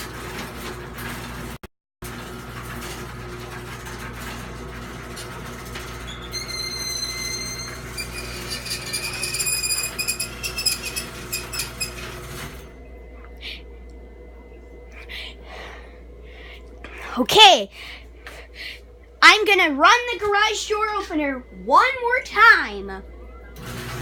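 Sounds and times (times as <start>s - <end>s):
garage door opener motor hum: 0.0s - 15.0s, 23.0s - 24.0s
door squeaking: 6.0s - 12.6s.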